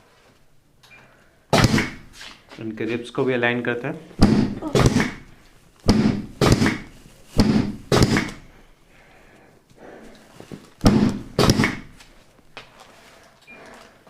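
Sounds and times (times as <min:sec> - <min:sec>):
dull thuds of chiropractic adjustments: 0:04.2 - 0:08.4, 0:10.8 - 0:12.0.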